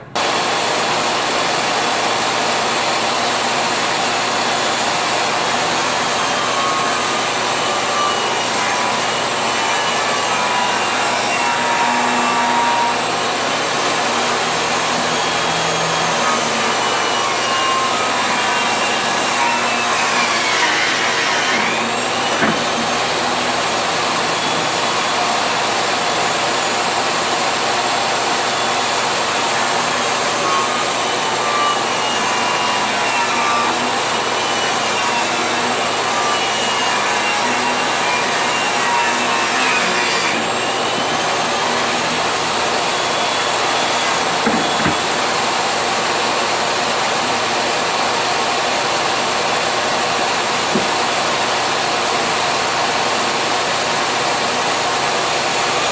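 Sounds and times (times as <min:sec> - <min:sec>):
power tool running on wood: 0:00.1 - 0:55.9
small knocks: 0:22.3 - 0:22.9.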